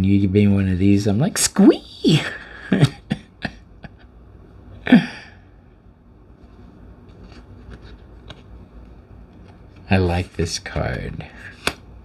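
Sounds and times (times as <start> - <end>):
cards clicking and tapping: 7.1 - 9.9, 10.8 - 11.9.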